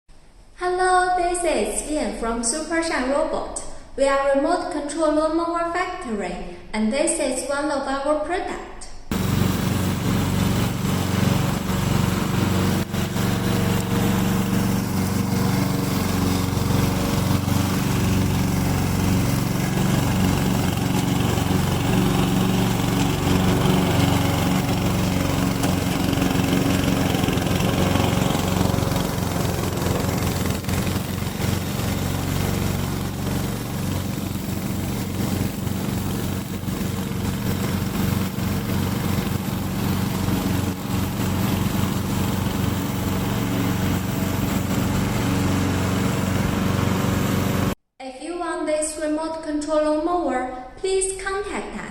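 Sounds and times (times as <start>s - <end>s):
lawn mower engine running: 9.1s - 47.8s.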